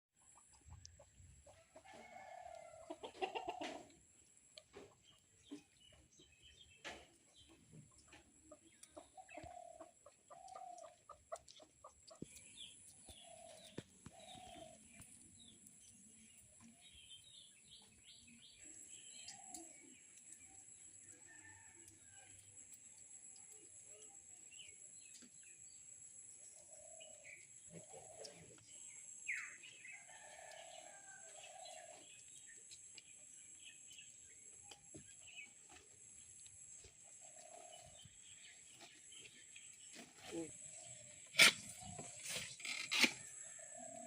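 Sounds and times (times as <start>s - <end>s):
chickens clucking: 0.2s - 5.8s, 6.9s - 14.8s.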